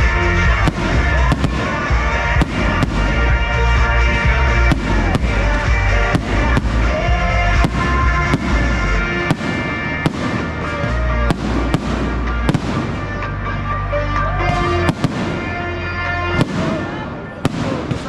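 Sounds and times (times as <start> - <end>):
loud pop music: 0.0 - 17.7
fireworks bangs: 0.0 - 18.0.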